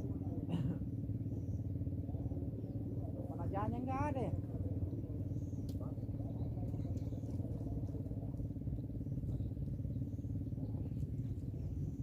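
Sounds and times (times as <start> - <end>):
engine droning: 0.0 - 12.0
faint small clicks: 5.6 - 5.8.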